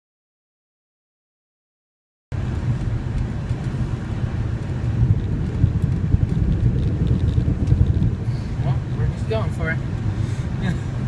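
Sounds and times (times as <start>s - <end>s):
car road and engine rumble: 2.3s - 11.0s.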